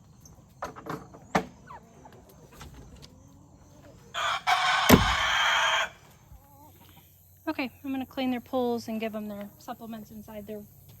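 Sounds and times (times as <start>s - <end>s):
faint chicken calls: 0.2s - 7.2s.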